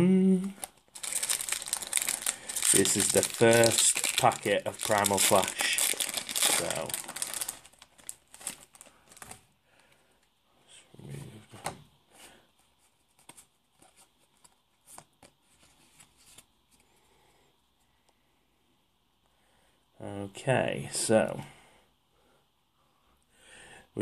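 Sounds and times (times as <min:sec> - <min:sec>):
trading cards rustling and clicking: 0:00.6 - 0:07.7.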